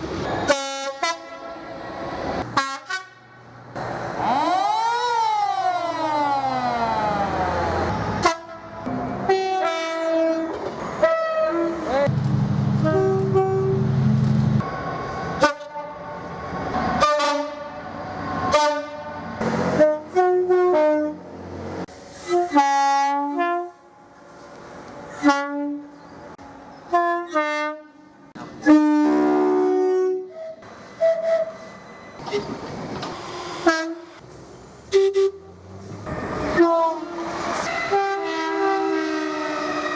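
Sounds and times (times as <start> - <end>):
train horn blasts: 0.4 - 1.7, 2.5 - 3.4, 8.2 - 11.9, 12.8 - 13.9, 16.9 - 17.8, 18.5 - 19.2, 19.8 - 21.2, 22.2 - 23.9, 25.1 - 25.9, 26.9 - 31.6, 33.6 - 34.2, 36.5 - 39.9.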